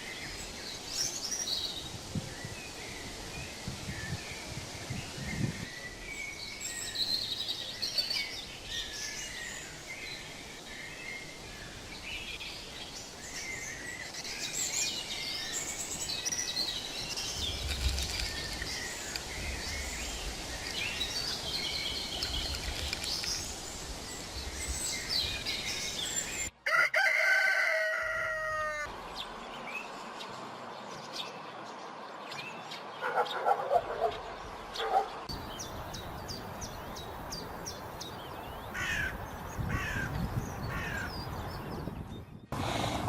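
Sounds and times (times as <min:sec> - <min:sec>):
songbirds chirping and trilling: 0:00.0 - 0:43.0
running water hiss: 0:08.4 - 0:26.5
rooster crowing: 0:26.6 - 0:28.9.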